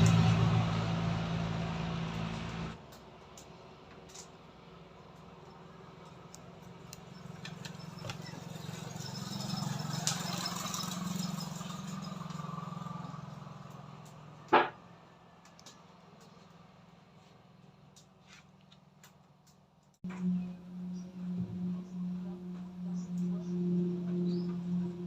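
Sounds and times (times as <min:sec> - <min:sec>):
motor vehicle passing by: 0:00.0 - 0:02.8, 0:05.6 - 0:17.6, 0:20.0 - 0:25.0.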